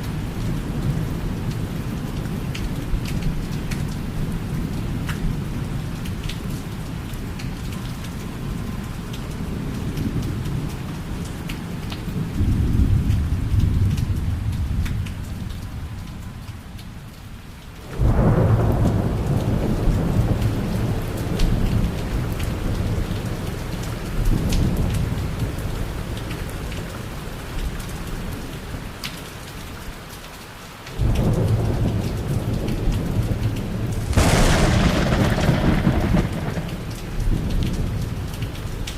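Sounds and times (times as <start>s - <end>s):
steady rain: 0.0s - 38.9s
thunder rumbling: 31.0s - 38.3s
loud thunder peals: 31.6s - 37.5s
sharp thunder crack: 33.1s - 37.0s.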